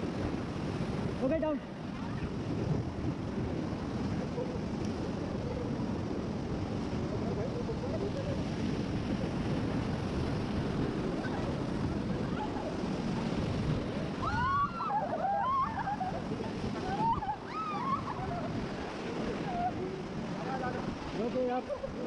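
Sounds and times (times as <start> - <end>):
people shrieking: 14.1 - 19.9.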